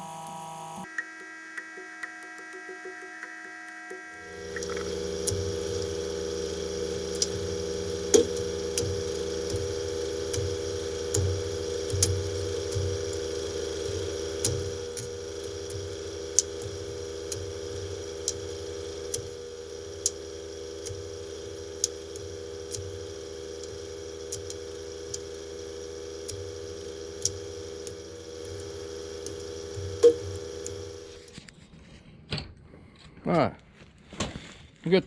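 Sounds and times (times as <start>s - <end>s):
engine hum: 4.2s - 31.3s.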